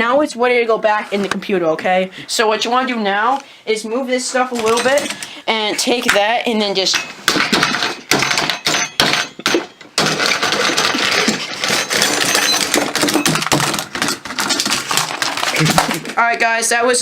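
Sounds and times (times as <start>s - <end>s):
hard parts clattering: 4.5s - 16.2s.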